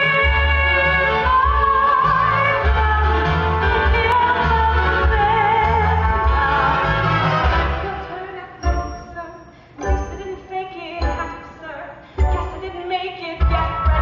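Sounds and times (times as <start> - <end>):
live band with heavy bass: 0.0 - 7.9.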